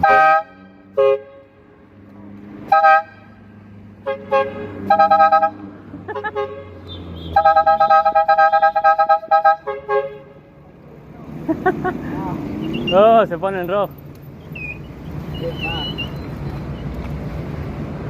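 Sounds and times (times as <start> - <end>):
car horns honking: 0.0 - 1.8, 2.6 - 10.6, 12.5 - 13.4
low hum of vehicle engines: 0.0 - 18.0.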